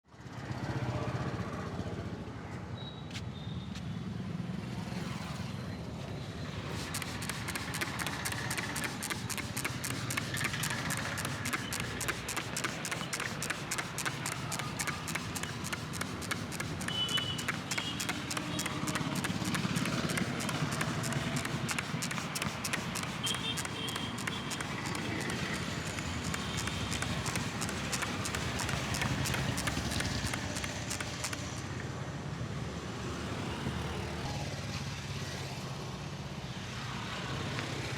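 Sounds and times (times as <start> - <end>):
street traffic: 6.2 - 33.7.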